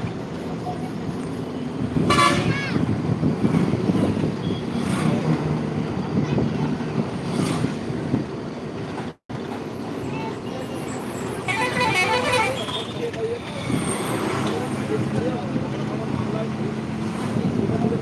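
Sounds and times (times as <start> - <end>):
road traffic rumble: 0.0 - 18.0
vehicle horn toot: 2.0 - 2.6, 11.5 - 13.1.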